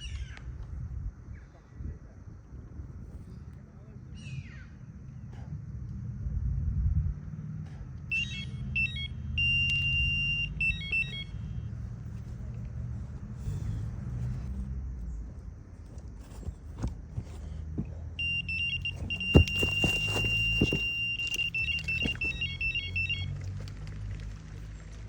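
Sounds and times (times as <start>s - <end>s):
low steady rumble: 0.0s - 25.0s
electronic bite alarm beeping: 8.1s - 11.7s, 18.2s - 23.3s.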